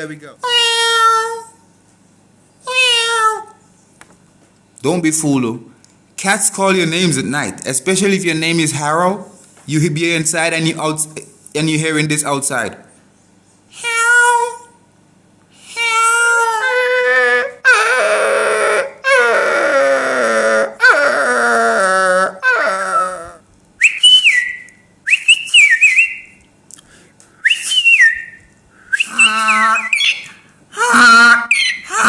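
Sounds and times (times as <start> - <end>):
man howling like a dog: 15.8 - 23.4, 29.0 - 30.2, 30.8 - 32.0
high whistled calls: 23.8 - 26.4, 27.4 - 32.0.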